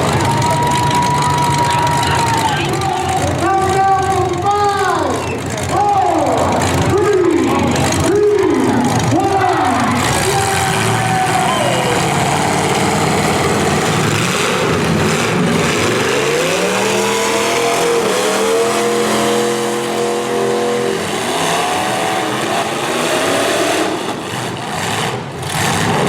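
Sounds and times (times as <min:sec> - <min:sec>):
engine revving: 0:00.0 - 0:26.0
engines roaring: 0:00.0 - 0:26.0.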